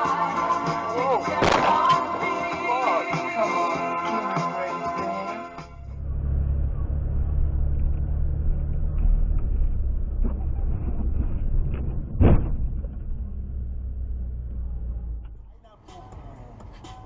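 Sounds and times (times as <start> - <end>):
car rumbling in motion: 5.8 - 17.0
loud thump: 10.7 - 13.1.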